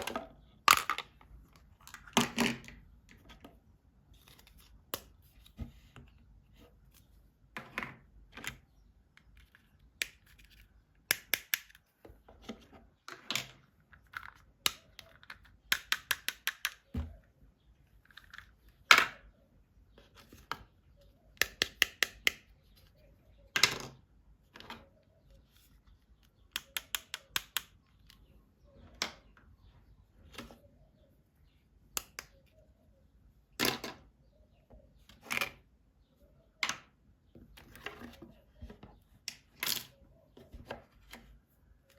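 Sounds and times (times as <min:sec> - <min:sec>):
plastic toys clicking: 0:26.5 - 0:27.8.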